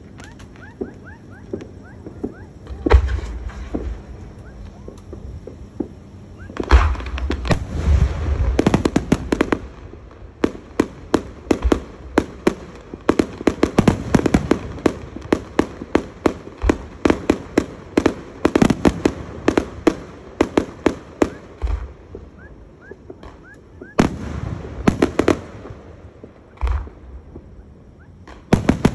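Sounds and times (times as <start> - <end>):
fireworks bangs and crackles: 0.0 - 28.9.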